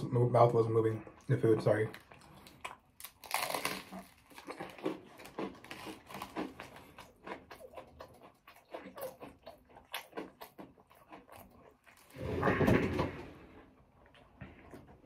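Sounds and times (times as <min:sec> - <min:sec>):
person chewing food: 0:01.0 - 0:12.3, 0:13.7 - 0:15.0.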